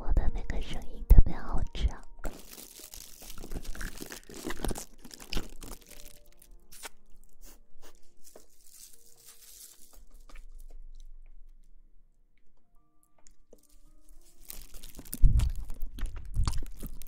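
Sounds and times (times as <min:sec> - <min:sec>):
rustling and crinkling: 0:02.2 - 0:11.1, 0:13.2 - 0:17.0.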